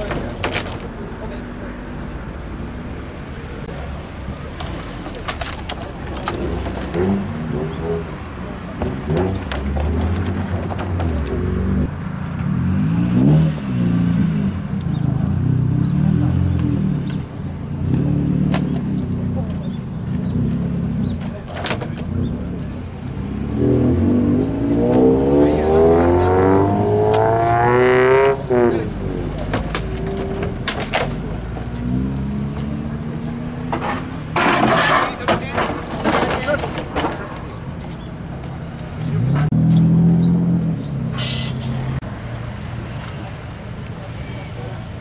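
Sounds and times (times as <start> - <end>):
car engine accelerating: 6.2 - 34.4, 37.8 - 43.3
short hiss: 41.2 - 41.8.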